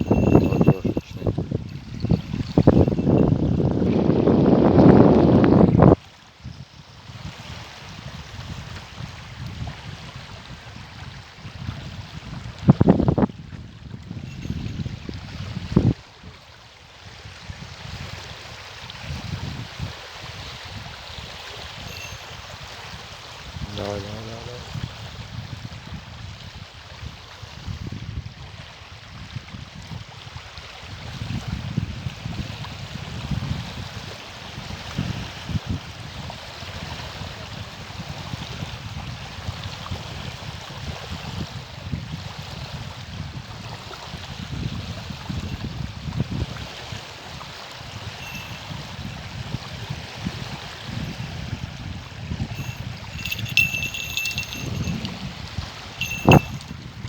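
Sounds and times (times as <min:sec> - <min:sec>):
high ringing: 0:00.0 - 0:03.7, 0:14.3 - 0:14.9, 0:21.9 - 0:22.6, 0:48.2 - 0:48.9, 0:52.5 - 0:55.2, 0:56.0 - 0:56.8
wind buffeting microphone: 0:00.0 - 0:16.0, 0:30.9 - 0:46.6, 0:47.8 - 0:57.0.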